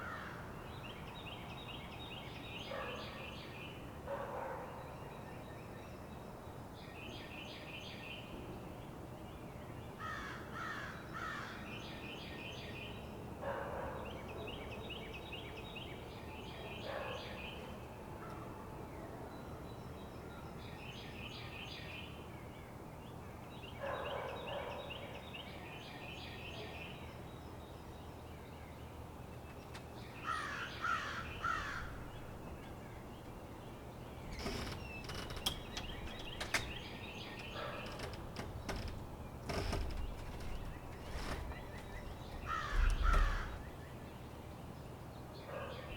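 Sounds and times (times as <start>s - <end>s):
distant highway traffic hum: 27.0s - 45.9s
birds chirping: 28.8s - 44.6s
rough bird calls: 30.2s - 43.8s.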